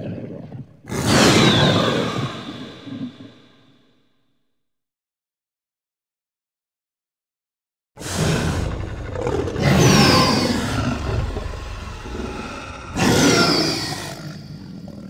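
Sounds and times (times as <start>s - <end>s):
dinosaur roar: 8.0s - 15.0s.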